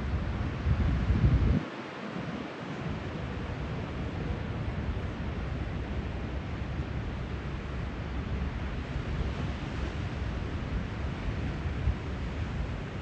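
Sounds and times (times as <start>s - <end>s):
wind buffeting microphone: 0.0s - 8.5s
ocean surf: 1.6s - 13.0s.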